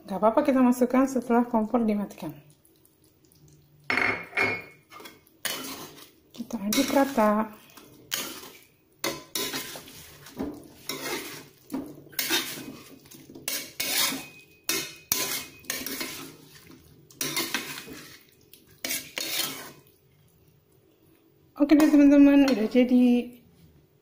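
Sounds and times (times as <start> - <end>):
spatula scraping a pan: 4.9 - 19.9.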